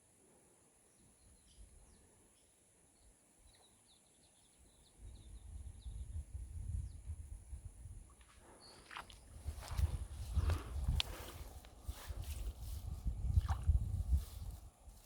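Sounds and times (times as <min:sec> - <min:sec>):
faint bird chirps: 0:00.8 - 0:07.0.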